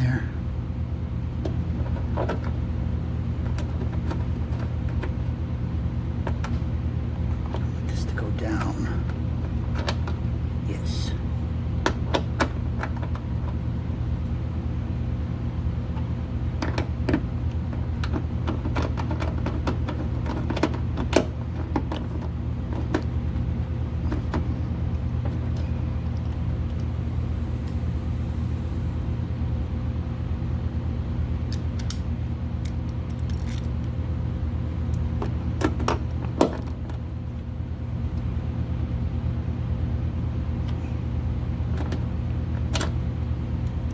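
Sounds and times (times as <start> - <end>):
steady low hum: 0.0 - 43.9
metal clicks of hand tools: 32.6 - 33.7.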